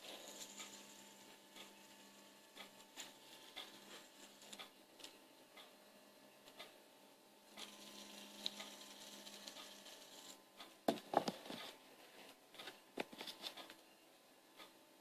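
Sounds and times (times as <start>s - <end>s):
faint steady hum: 0.0s - 15.0s
toys clicking and knocking: 9.4s - 11.8s.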